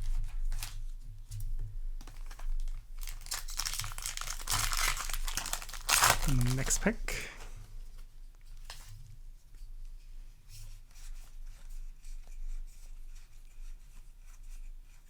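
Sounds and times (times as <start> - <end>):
cards clicking and rustling: 2.1 - 7.0.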